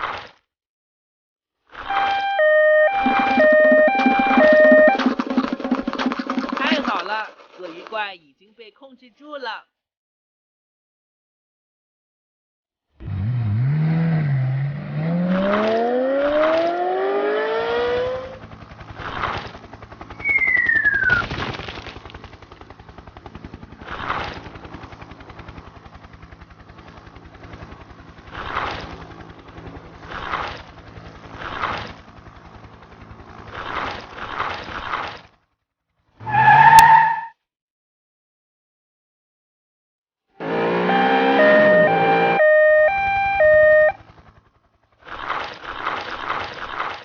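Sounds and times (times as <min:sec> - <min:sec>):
ringing tone: 0:01.9 - 0:05.1, 0:40.8 - 0:44.0
falling tone: 0:01.9 - 0:05.9, 0:20.2 - 0:21.2, 0:40.4 - 0:44.0
revving sound rising in pitch: 0:01.9 - 0:05.9, 0:13.0 - 0:18.4, 0:20.2 - 0:21.1, 0:40.4 - 0:44.0.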